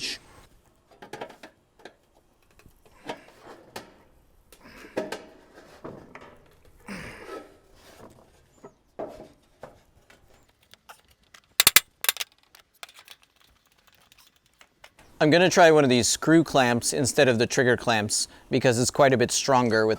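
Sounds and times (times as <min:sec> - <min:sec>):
loud rattling bursts: 0:11.6 - 0:12.2, 0:12.8 - 0:14.2.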